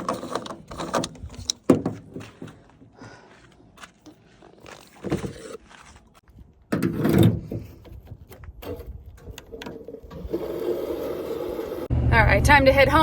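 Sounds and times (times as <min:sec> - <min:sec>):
handling knocks and clatter: 0:00.0 - 0:02.9.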